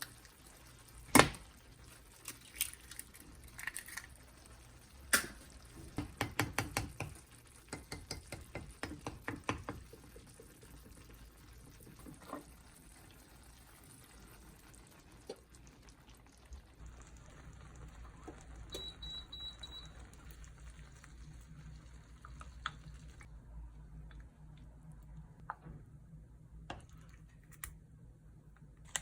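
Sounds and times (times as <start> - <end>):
low steady hum: 16.3 - 29.0.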